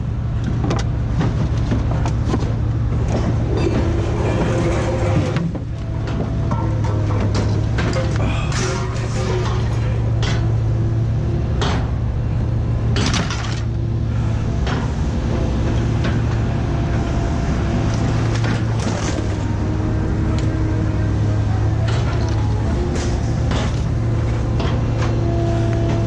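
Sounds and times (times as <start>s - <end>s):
steady low hum: 0.0s - 26.0s
scrap metal clanking: 1.2s - 10.7s.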